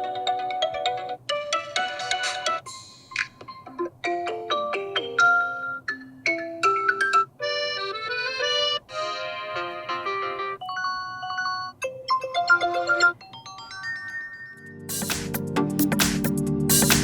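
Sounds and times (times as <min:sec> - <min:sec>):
electronic ringtone tunes and chimes: 0:10.6 - 0:15.9.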